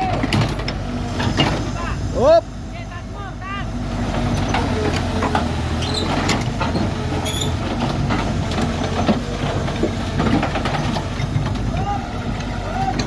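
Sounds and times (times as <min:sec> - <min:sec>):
diesel engine running: 0:00.0 - 0:13.0
metal clanks and knocks: 0:04.4 - 0:13.0.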